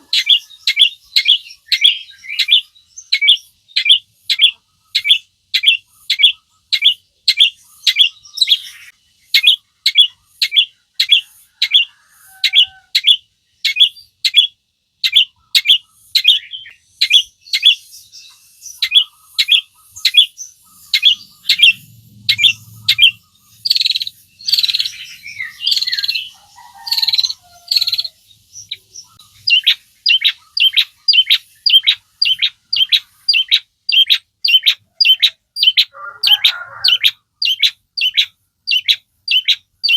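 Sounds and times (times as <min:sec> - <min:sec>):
scratchy bird warbling: 0:18.8 - 0:28.2, 0:29.0 - 0:39.5.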